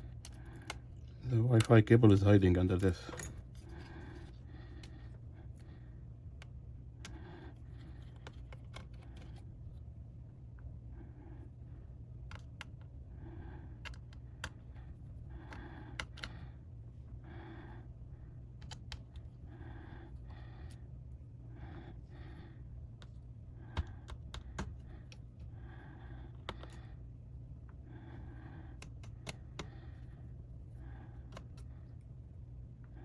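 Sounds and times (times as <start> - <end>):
small tools clicking on laptop parts: 0.0 - 5.7, 6.4 - 9.5, 12.2 - 12.9, 13.8 - 16.6, 18.6 - 19.3, 23.0 - 25.5, 26.2 - 27.0, 28.5 - 31.9
steady low hum: 0.0 - 33.0
soft breathing: 2.2 - 9.9, 10.6 - 33.0.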